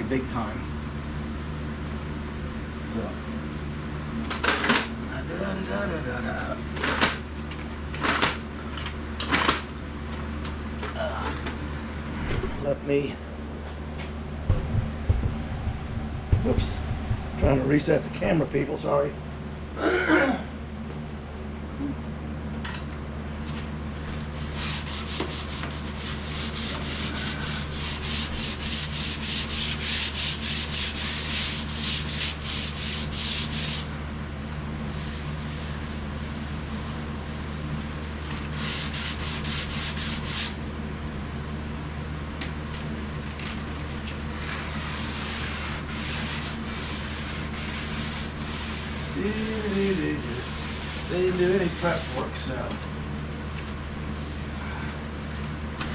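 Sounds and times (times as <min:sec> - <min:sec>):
sandpaper rubbing on metal: 0:24.4 - 0:33.9, 0:34.9 - 0:40.6, 0:44.4 - 0:52.2.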